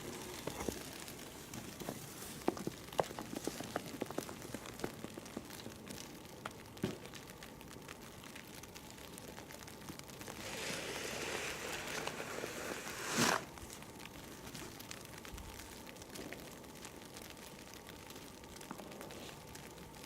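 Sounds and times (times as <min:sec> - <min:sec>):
wet snow ticking: 0:00.0 - 0:20.0
shovel scraping: 0:10.4 - 0:13.5
snow shovel pushing snow: 0:10.4 - 0:13.5.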